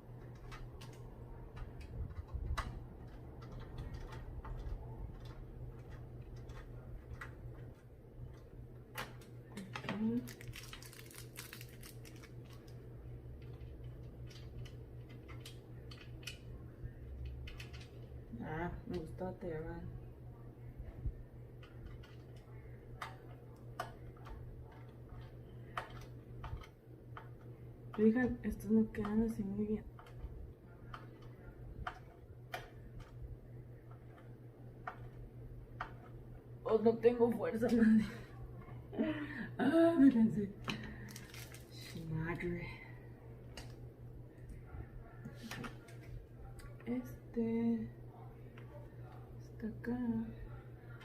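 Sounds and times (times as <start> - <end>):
steady low hum: 0.0 - 51.0
computer parts clicking and tapping: 0.1 - 18.2, 21.6 - 33.2, 33.8 - 36.4.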